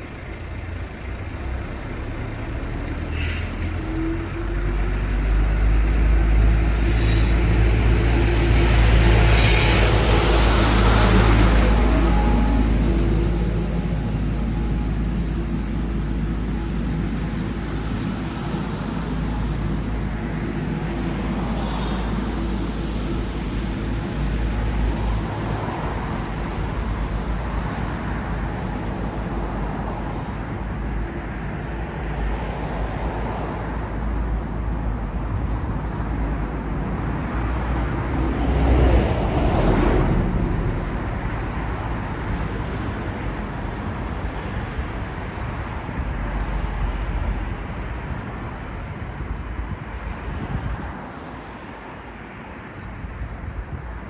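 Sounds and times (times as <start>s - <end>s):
traffic rumble: 0.0s - 54.0s
vehicle passing close: 4.2s - 31.0s.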